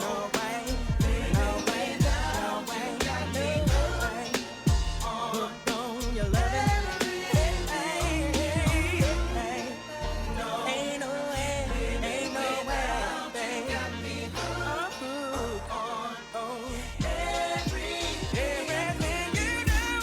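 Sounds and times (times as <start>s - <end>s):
person singing: 0.0s - 20.0s
bass and drums: 0.4s - 10.4s, 16.9s - 20.0s.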